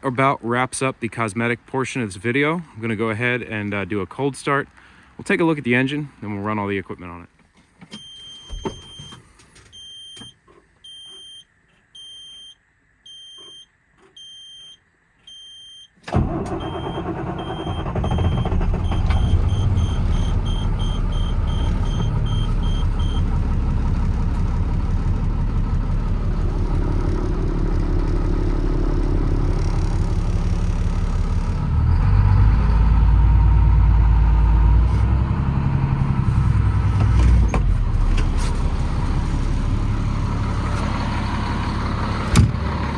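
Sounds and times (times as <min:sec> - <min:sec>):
dashboard warning beeps: 0:07.9 - 0:23.5
diesel engine cranking: 0:16.0 - 0:42.9
diesel engine idling: 0:16.1 - 0:42.9.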